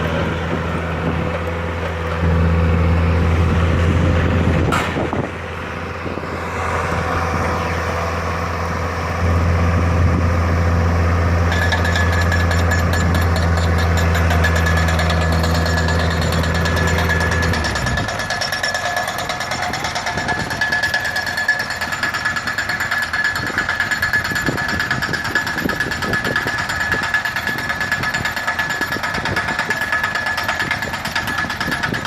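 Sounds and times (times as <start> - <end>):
engine droning: 0.0 - 32.0
rapid mechanical rattling: 11.5 - 32.0.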